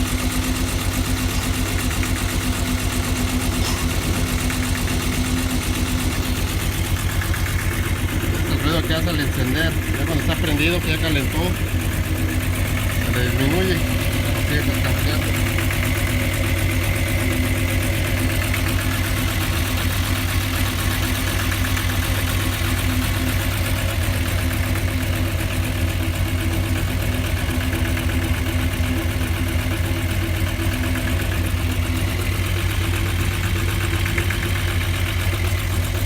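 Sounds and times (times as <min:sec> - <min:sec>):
car engine idling: 0:00.0 - 0:36.0
light engine rattle: 0:00.0 - 0:36.0.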